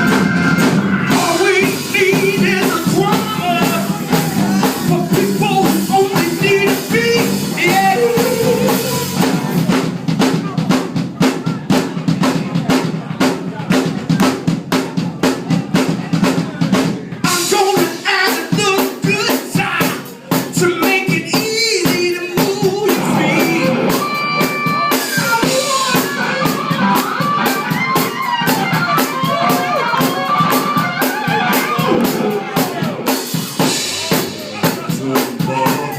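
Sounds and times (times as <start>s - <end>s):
drum kit beat: 0.0s - 35.9s
people singing: 1.0s - 9.7s, 20.8s - 26.2s, 31.5s - 35.9s.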